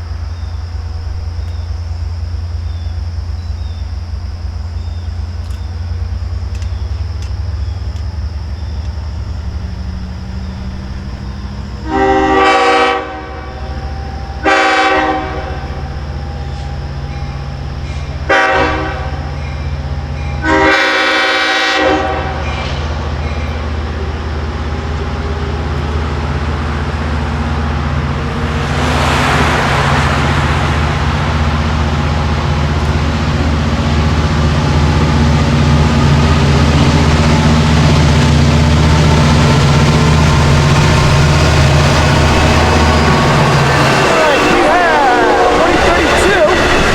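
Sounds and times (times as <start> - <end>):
diesel engine drone: 0.0 - 46.9
train rumble passing: 0.0 - 46.9
locomotive horn: 11.6 - 46.9.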